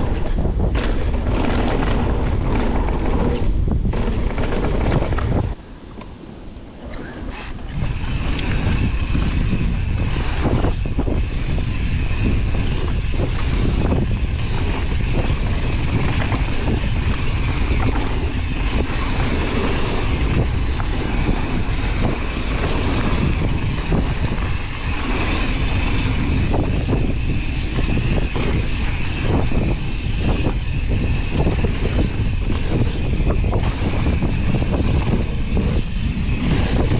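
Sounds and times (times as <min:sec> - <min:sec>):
wind rushing over microphone: 0:00.0 - 0:36.9
bike tyre noise: 0:05.5 - 0:36.9.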